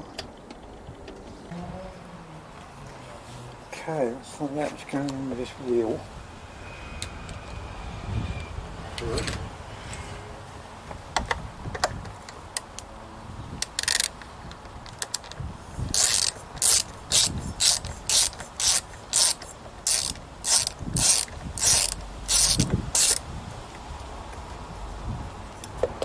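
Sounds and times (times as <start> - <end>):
ratchet clicking: 13.6 - 14.3, 14.9 - 24.5.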